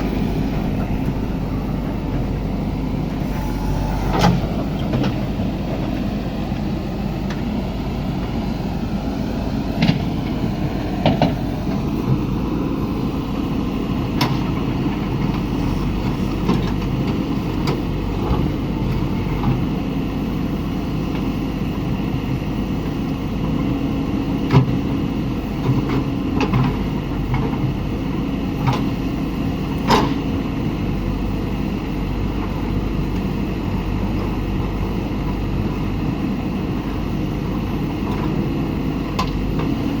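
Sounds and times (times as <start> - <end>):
machine knocks and clanks: 0.0 - 6.2
diesel engine running: 0.0 - 40.0.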